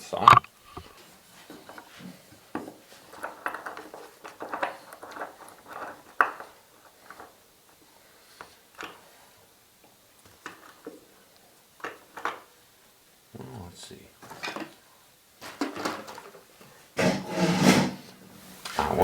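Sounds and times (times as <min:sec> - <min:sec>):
wood being handled: 0:00.0 - 0:01.0.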